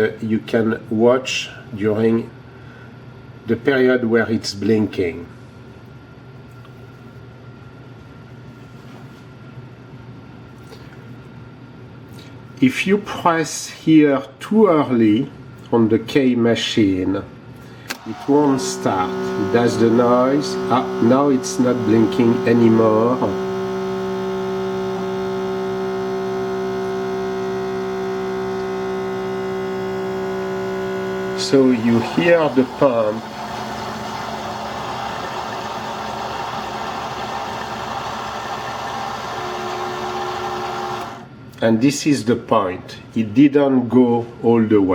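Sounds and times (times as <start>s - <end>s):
steady low hum: 16.9s - 38.3s.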